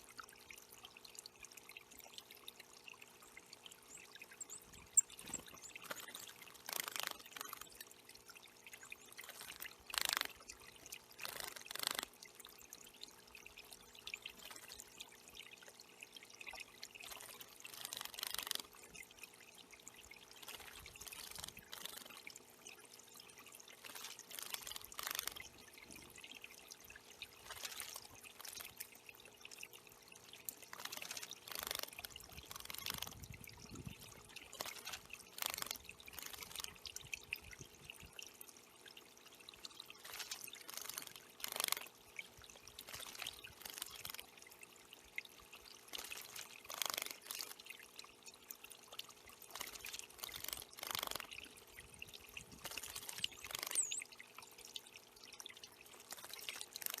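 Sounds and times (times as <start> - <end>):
faint steady hum: 0.0 - 57.0
water trickling and pouring: 0.0 - 57.0
water splashing: 4.8 - 15.1, 16.8 - 22.6, 23.4 - 37.8, 38.4 - 54.9, 55.6 - 57.0.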